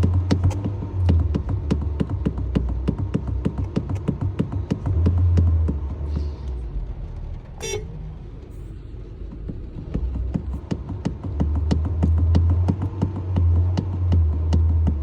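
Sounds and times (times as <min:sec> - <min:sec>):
low rumble: 0:00.0 - 0:15.0
car horn short beep: 0:07.6 - 0:08.0.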